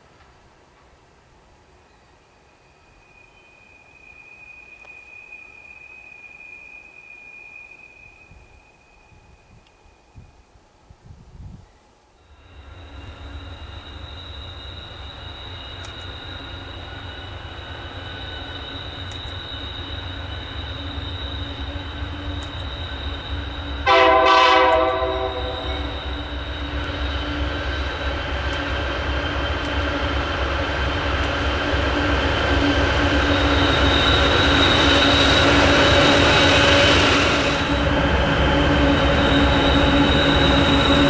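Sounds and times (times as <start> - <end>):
train approaching: 0.0 - 10.9, 12.2 - 41.0
wheel flanges squealing: 12.4 - 41.0
train air horn blast: 23.8 - 26.3.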